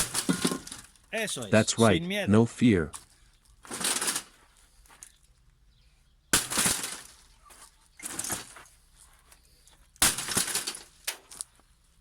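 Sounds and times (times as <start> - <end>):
block crashing onto a panel: 0.0 - 0.9, 6.4 - 7.2, 10.0 - 10.9
breaking pieces clattering: 0.0 - 1.1, 3.6 - 4.4, 6.4 - 7.4, 8.0 - 8.6, 10.0 - 11.4.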